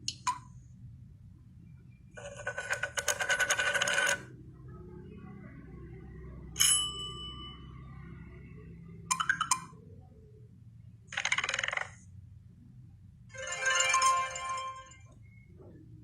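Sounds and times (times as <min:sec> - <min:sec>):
rattle of clicks: 0:11.1 - 0:12.0.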